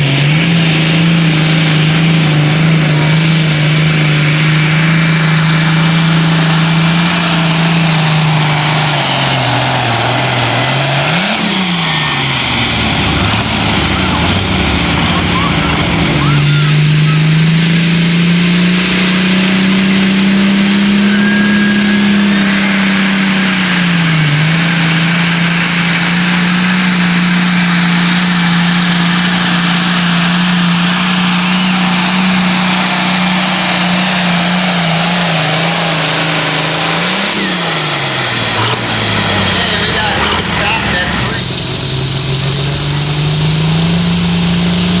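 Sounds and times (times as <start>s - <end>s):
diesel tractor engine at full throttle: 0.0s - 45.0s
turbo whistle: 20.5s - 23.3s.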